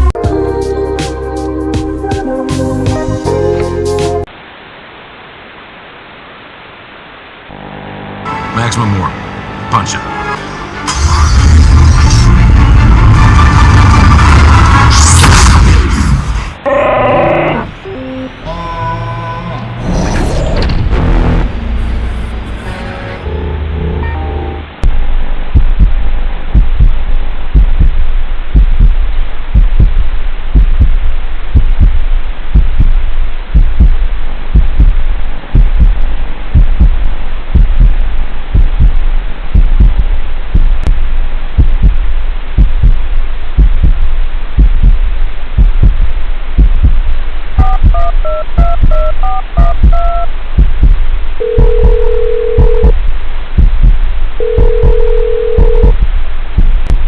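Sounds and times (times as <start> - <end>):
electronic beeps: 47.6 - 50.3
long steady beeps: 47.6 - 50.3.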